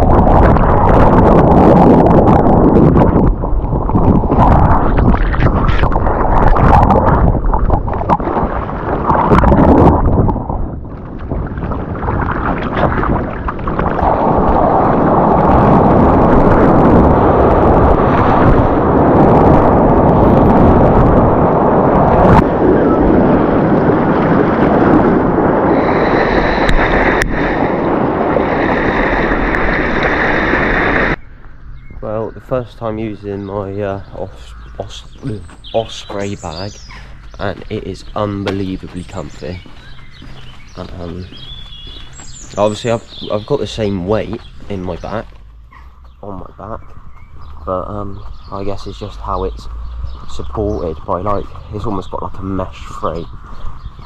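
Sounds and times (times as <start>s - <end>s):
surf breaking: 0.0s - 31.2s
wind buffeting microphone: 0.0s - 54.0s
thin steady whistle: 25.7s - 26.8s.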